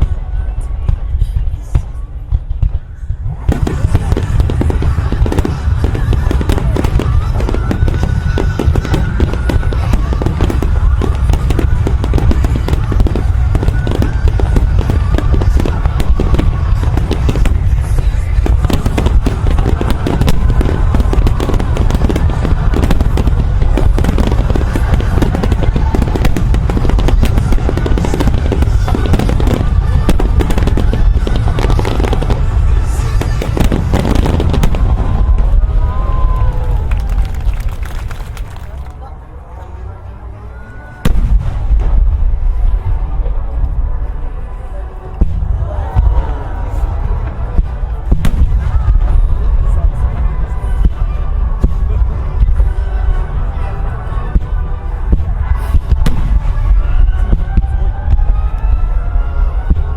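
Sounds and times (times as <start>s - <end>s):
fireworks bursts and booms: 0.0s - 39.0s, 41.0s - 59.9s
loud music: 3.5s - 36.6s.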